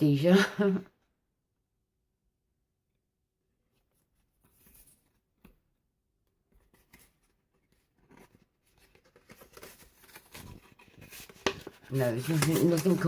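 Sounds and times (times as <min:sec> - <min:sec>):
paper envelope rustling: 0:06.5 - 0:13.0.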